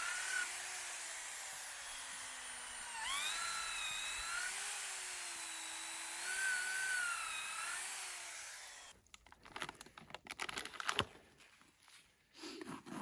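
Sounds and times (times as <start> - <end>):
electric drill boring into wood: 0.0 - 8.9.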